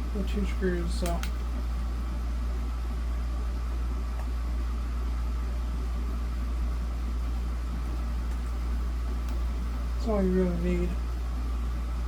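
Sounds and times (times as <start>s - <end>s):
faint whir: 0.0s - 12.0s
low hum: 0.0s - 12.0s.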